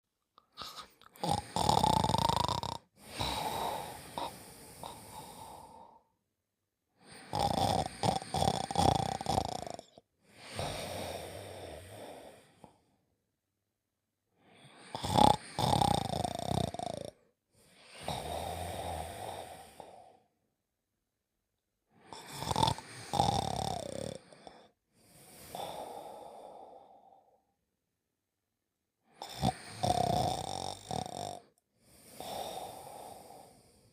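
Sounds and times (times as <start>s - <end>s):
cartoon snoring: 0.5s - 6.1s, 7.0s - 12.9s, 14.6s - 17.3s, 17.9s - 20.3s, 22.0s - 27.4s, 29.1s - 33.9s.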